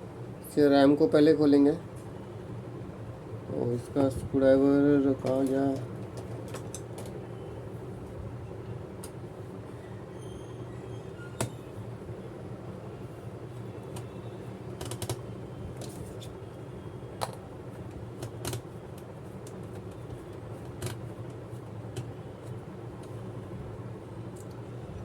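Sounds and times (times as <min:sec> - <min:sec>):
low background hum: 0:00.0 - 0:25.0
clicks and taps of laptop parts: 0:14.8 - 0:15.2, 0:17.2 - 0:17.5, 0:18.2 - 0:23.2.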